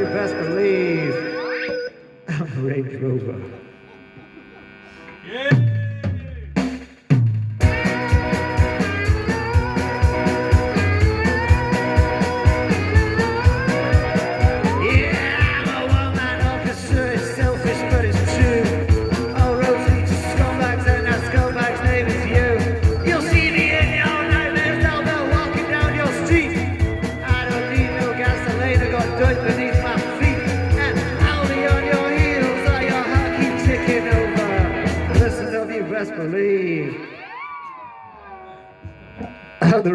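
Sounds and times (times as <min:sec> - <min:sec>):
rock band playing live: 0:07.6 - 0:36.0.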